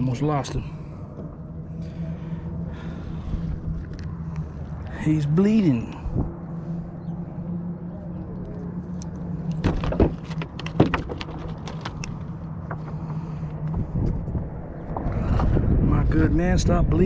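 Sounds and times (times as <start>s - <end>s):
motor hum: 0.0s - 15.0s
sharp clicks and knocks: 9.0s - 13.2s.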